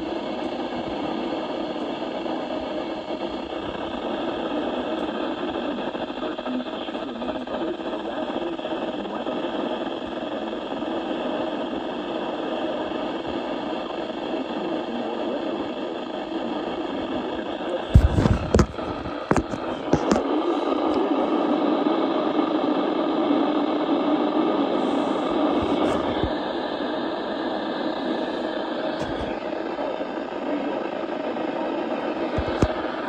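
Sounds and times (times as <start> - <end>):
background hum and hiss: 16.3 - 21.4.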